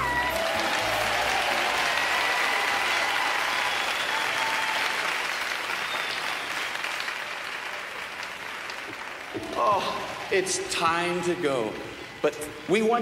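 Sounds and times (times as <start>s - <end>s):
cheers or whistles: 0.0s - 7.1s
audience applauding: 0.0s - 11.2s.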